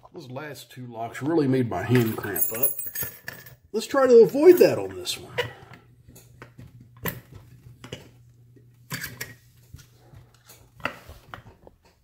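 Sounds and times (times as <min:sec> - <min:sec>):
metal clinks and knocks: 0:01.9 - 0:03.6.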